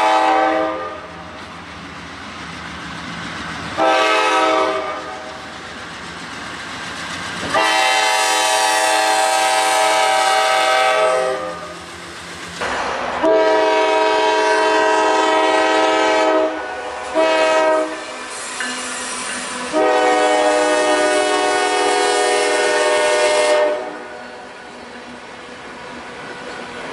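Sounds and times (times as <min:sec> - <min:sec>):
locomotive horn blasts: 0:00.0 - 0:01.1, 0:03.8 - 0:05.2, 0:07.5 - 0:11.8, 0:13.2 - 0:18.1, 0:19.7 - 0:24.2.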